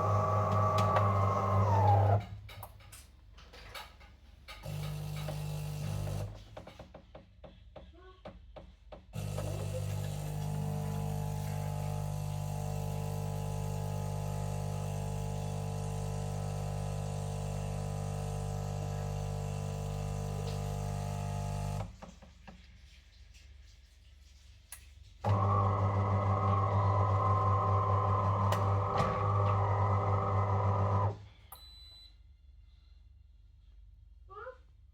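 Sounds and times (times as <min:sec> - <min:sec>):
coffee machine humming: 0:00.0 - 0:02.2, 0:04.6 - 0:06.3, 0:09.2 - 0:21.9, 0:25.2 - 0:31.2.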